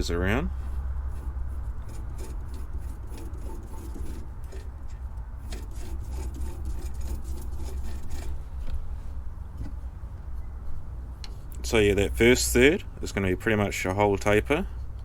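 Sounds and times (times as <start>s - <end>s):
low steady hum: 0.0s - 15.0s
pencil scratching on wood: 0.7s - 4.7s, 5.4s - 8.4s.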